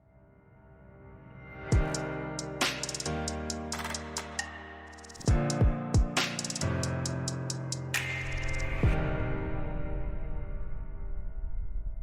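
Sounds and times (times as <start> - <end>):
ticking hi-hats: 1.8 - 8.7.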